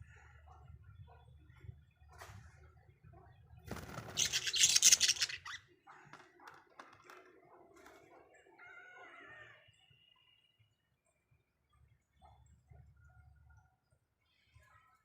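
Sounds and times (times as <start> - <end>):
budgerigars chattering: 3.7 - 5.6
budgerigar warble: 3.8 - 6.2
budgerigar screech: 4.2 - 5.6.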